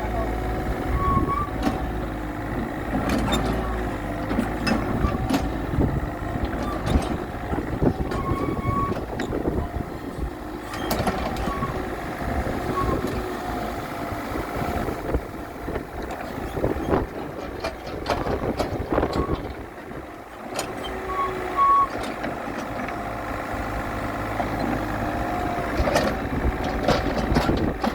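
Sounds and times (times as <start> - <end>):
backhoe engine running: 0.0 - 27.9
knocks and clanks: 2.6 - 5.7.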